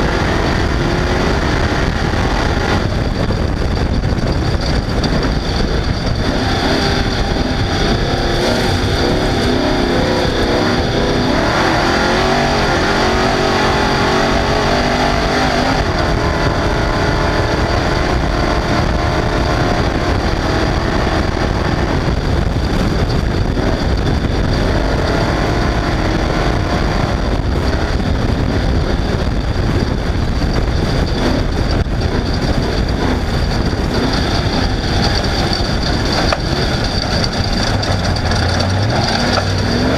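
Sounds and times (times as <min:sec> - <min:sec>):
off-road vehicle engine revving: 0:00.0 - 0:39.9
wind and rough terrain rumble: 0:00.0 - 0:39.9.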